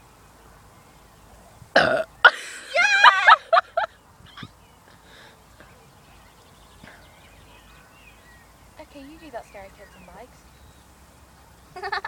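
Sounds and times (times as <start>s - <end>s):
girl burping: 1.8s - 2.4s.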